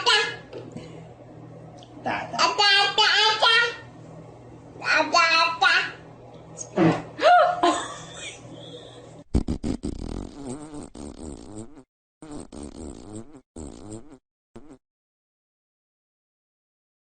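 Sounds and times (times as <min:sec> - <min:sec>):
baby farting: 0:09.3 - 0:14.8.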